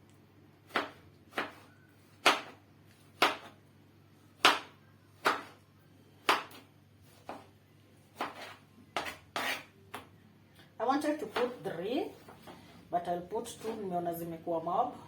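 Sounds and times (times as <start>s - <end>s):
knife chopping on cutting board: 0.7s - 2.6s, 3.2s - 3.6s, 4.4s - 5.6s, 6.2s - 7.5s, 8.1s - 10.0s.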